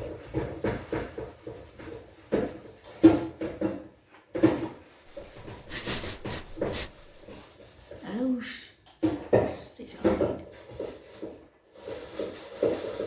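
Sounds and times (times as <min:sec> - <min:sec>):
cloth rustling: 0:05.1 - 0:07.5.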